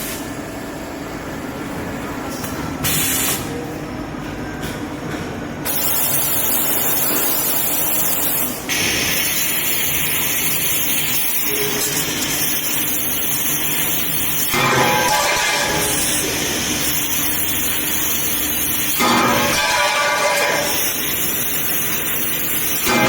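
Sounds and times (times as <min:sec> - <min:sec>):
steady machine noise: 0:05.6 - 0:23.0.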